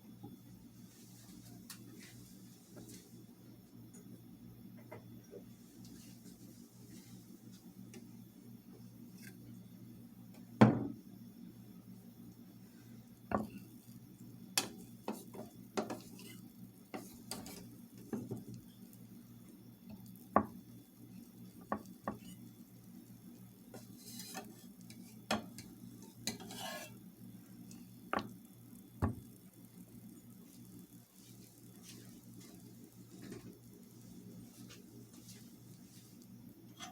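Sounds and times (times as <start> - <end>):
low steady hum: 0.0 - 36.9
utensil scrapes: 23.8 - 25.2, 26.2 - 27.0.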